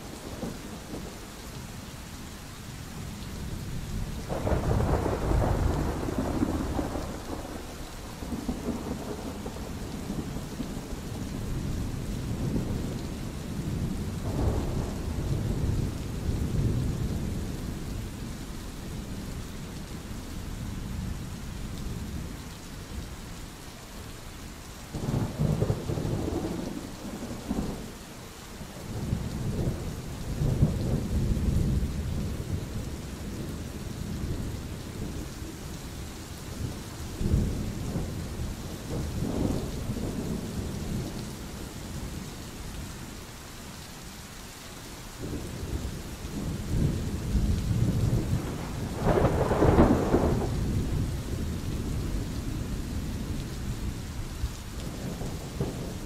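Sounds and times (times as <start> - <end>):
steady rain: 0.0 - 56.0
thunder rumbling: 4.0 - 18.2, 25.0 - 27.9, 28.8 - 35.6, 36.6 - 42.3, 45.2 - 56.0.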